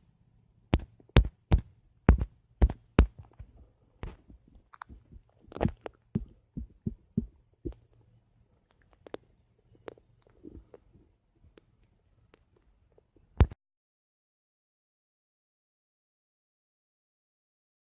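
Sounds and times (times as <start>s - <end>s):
stomach gurgling pops and clicks: 0.8s - 13.6s.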